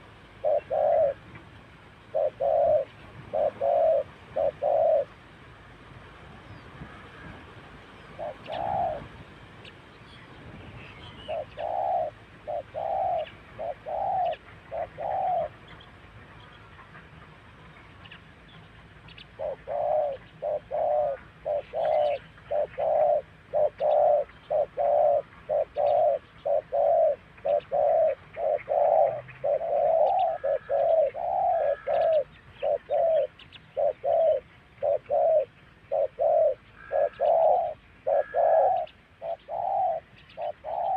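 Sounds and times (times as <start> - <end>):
dove cooing: 0.0 - 5.2, 6.9 - 9.2, 11.0 - 15.8, 19.2 - 40.9
small birds chirping: 0.0 - 5.2, 6.4 - 17.0, 17.6 - 40.9.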